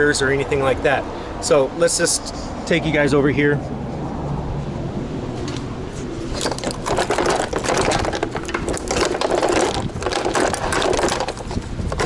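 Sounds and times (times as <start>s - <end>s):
crackling handling clatter: 6.2s - 12.0s.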